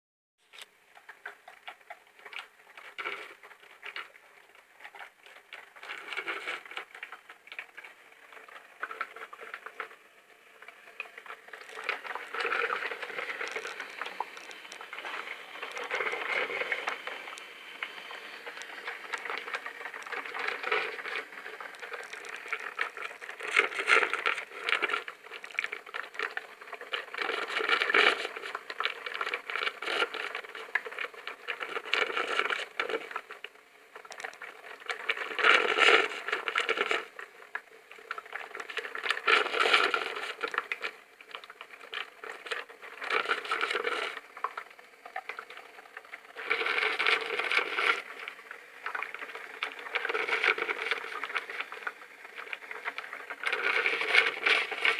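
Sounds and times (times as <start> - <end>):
coffee machine sputtering: 10.6 - 31.9.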